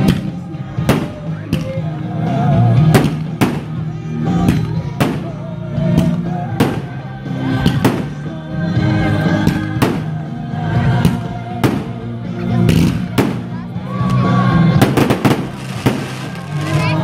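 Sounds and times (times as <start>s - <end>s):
song with wavering sung melody: 0.0s - 12.4s
sharp loud cracks: 14.8s - 16.8s.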